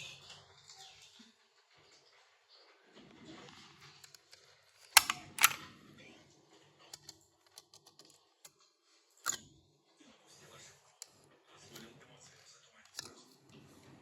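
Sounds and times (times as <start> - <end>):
loud sharp clicks: 5.0 - 5.6.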